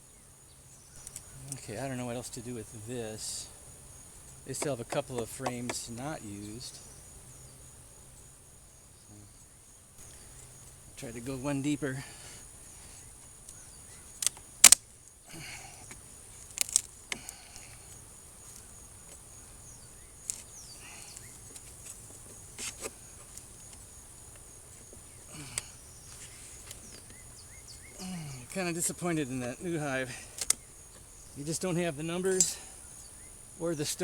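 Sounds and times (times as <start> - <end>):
high insect trill: 0.0 - 34.0
wooden hive boxes knocking: 4.5 - 6.2.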